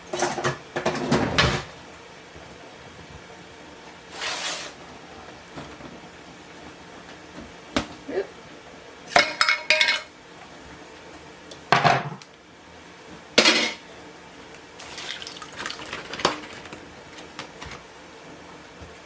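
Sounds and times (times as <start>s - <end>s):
dishes and utensils clinking: 9.1s - 10.1s, 13.4s - 13.8s.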